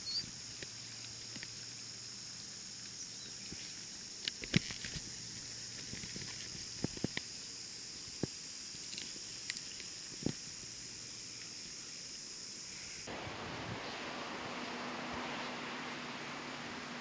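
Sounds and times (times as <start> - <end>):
rushing hiss: 11.6 - 17.0.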